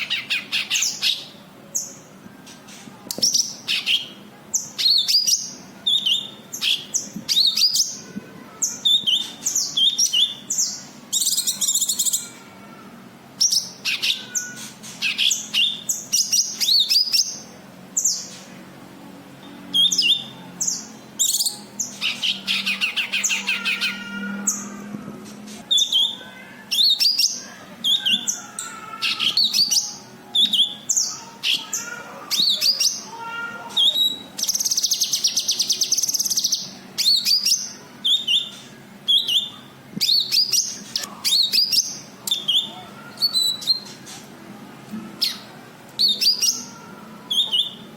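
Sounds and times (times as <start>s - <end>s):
bird singing chirps and whistles: 33.8s - 43.8s, 45.2s - 46.7s, 47.3s - 47.9s.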